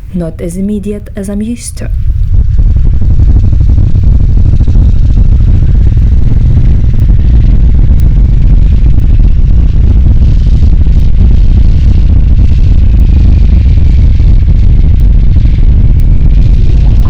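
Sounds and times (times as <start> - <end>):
motorcycle engine low rumble: 1.9 - 17.0.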